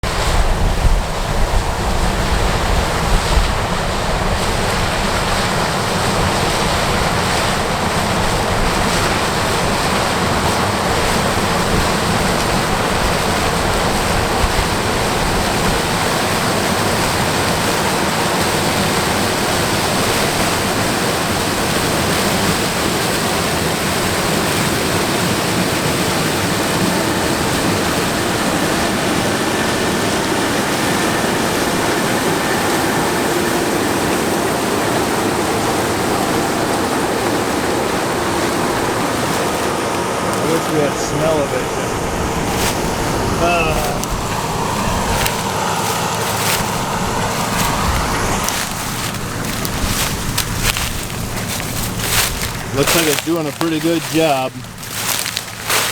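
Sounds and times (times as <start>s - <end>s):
combine harvester running: 0.0s - 55.9s
low uneven rumbling: 38.4s - 55.9s.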